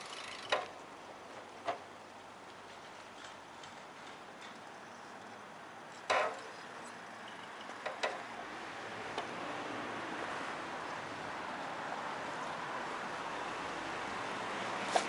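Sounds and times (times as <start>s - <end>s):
bicycle clatter: 0.0s - 0.8s, 6.1s - 6.5s
rushing road noise: 0.0s - 15.0s.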